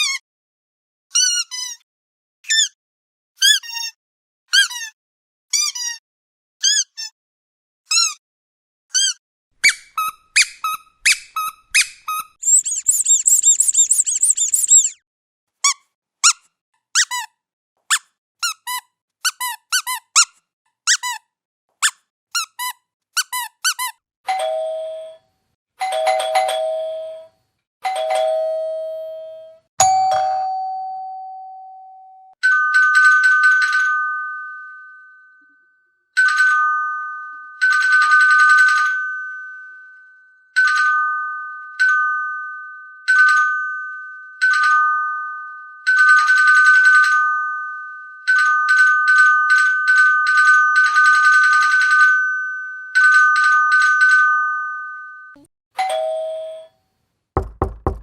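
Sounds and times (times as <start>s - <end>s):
squeaky toy squeaking: 0.0s - 0.2s, 1.1s - 1.8s, 2.4s - 2.8s, 3.4s - 6.0s, 6.6s - 7.2s, 7.9s - 8.2s, 8.9s - 15.0s, 15.6s - 24.0s
electronic two-tone ring: 12.4s - 15.0s
doorbell chiming ding-dong: 27.9s - 35.8s.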